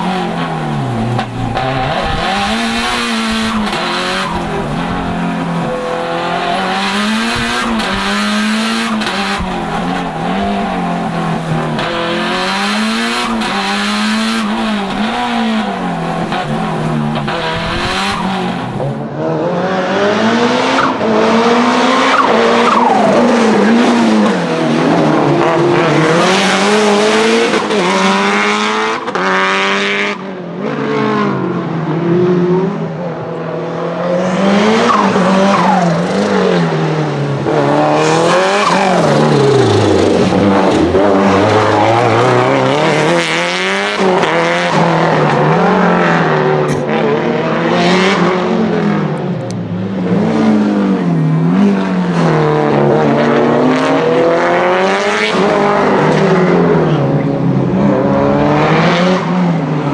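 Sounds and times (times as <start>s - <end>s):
tyres squealing: 0.0s - 19.0s, 38.0s - 43.9s
car engine revving: 0.0s - 59.9s.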